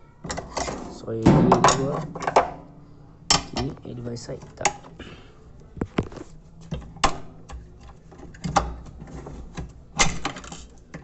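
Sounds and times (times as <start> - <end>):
hard plastic parts clicking and knocking: 0.2 - 2.6, 5.8 - 11.0.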